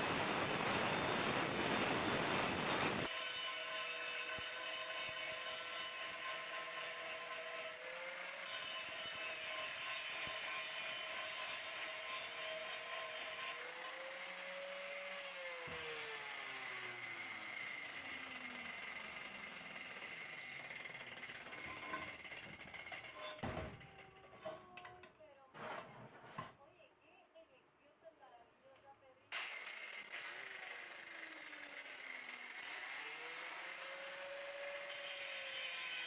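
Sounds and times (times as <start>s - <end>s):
power tool motor whining: 0.0s - 3.1s.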